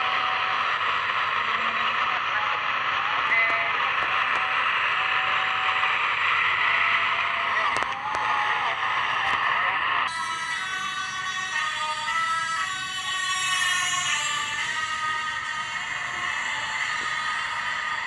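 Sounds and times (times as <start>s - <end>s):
voices: 0.0s - 10.1s.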